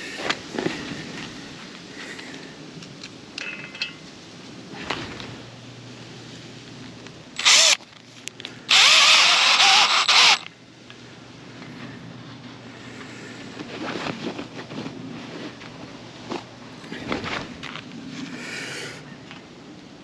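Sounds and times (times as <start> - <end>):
power drill driving a screw: 7.4 - 7.8, 8.7 - 10.5.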